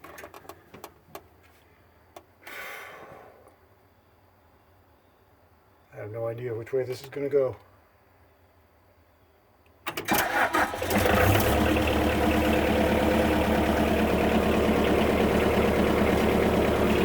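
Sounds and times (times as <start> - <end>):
engine cranking and idling: 9.9 - 17.0.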